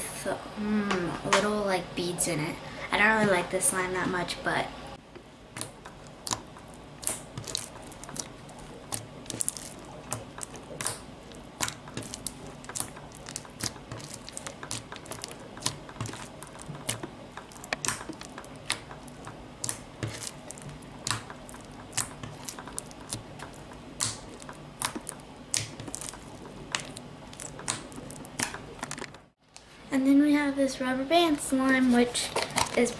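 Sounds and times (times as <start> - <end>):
low background hum: 0.0 - 32.9
slime crackling clicks and pops: 5.5 - 11.0, 11.6 - 29.1.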